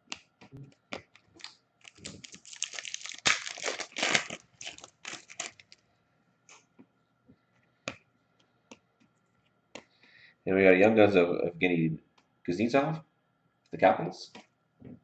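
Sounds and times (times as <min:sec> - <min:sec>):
wrapper tearing and crinkling: 0:01.4 - 0:05.8.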